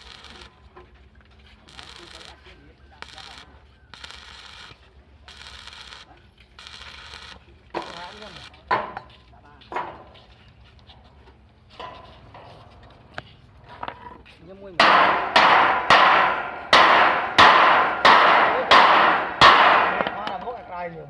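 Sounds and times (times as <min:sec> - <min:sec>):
ringing metallic knocks: 0:14.8 - 0:20.8.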